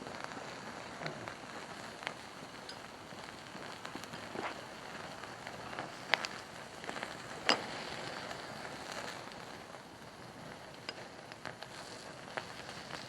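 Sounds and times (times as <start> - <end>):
wood fire crackling: 0.0 - 13.0
sharp pops of fire: 0.3 - 13.0.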